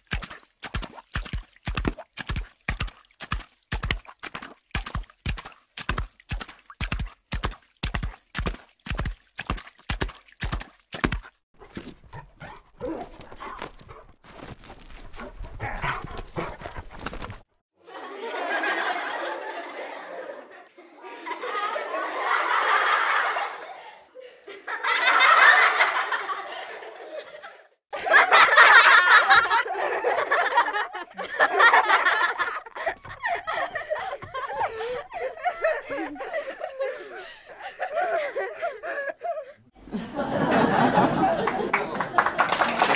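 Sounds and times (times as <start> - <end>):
people laughing: 17.8 - 42.9.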